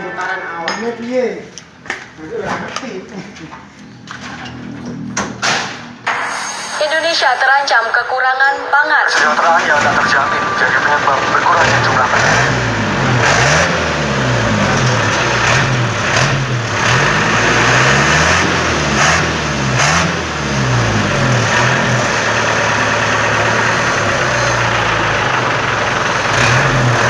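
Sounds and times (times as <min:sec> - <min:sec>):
truck engine revving: 0:09.2 - 0:27.0.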